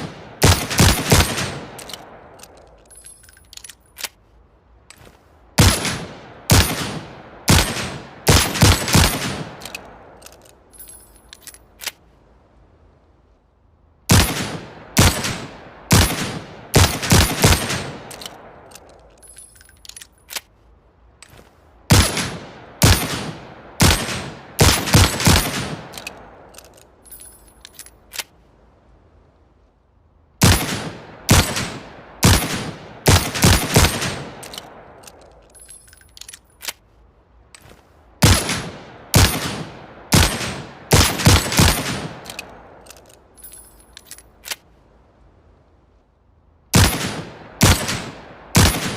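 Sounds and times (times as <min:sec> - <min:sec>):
light metallic clicks: 0:00.5 - 0:05.2, 0:17.6 - 0:20.6, 0:25.2 - 0:28.4, 0:33.3 - 0:37.9, 0:41.4 - 0:44.7.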